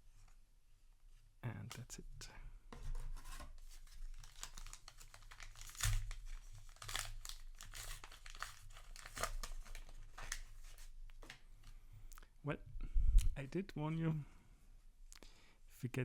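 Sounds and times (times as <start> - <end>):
foil wrapper crinkling and tearing: 3.6 - 11.4.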